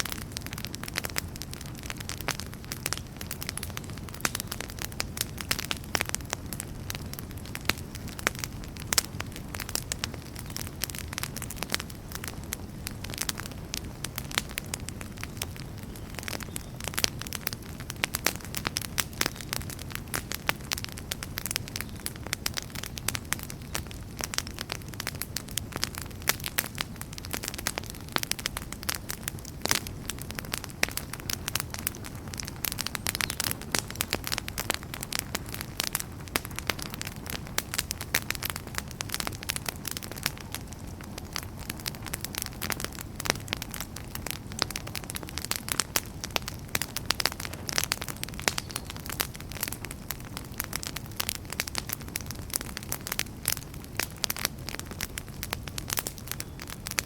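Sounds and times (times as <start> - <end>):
burning wood crackling and popping: 0.0 - 57.0
low rumble of flames: 0.0 - 57.0.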